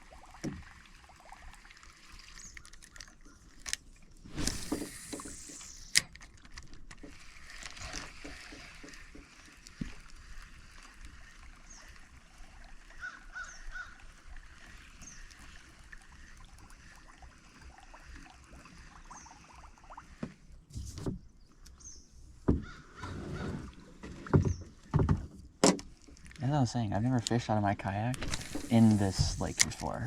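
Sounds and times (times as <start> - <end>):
water sloshing: 0.0 - 30.0
faint birdsong: 11.2 - 16.5, 18.7 - 25.0.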